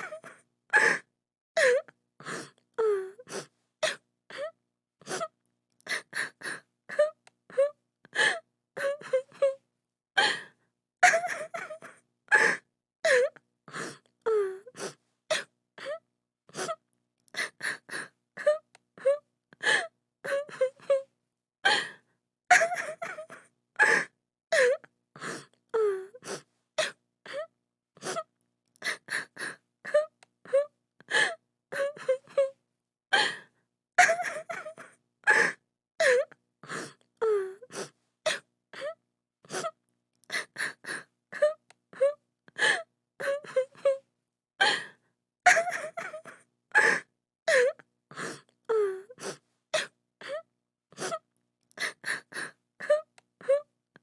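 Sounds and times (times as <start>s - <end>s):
woman sobbing and crying: 0.0s - 1.0s, 11.0s - 13.4s, 17.4s - 21.1s, 22.5s - 24.8s, 28.9s - 32.6s, 34.0s - 36.3s, 37.2s - 44.0s, 45.5s - 47.8s.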